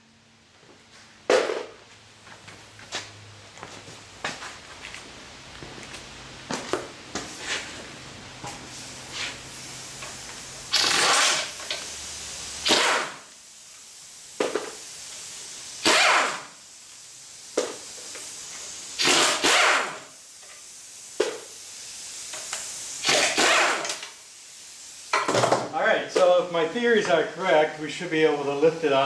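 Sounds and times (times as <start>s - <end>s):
pneumatic tool bursts: 8.4s - 25.7s.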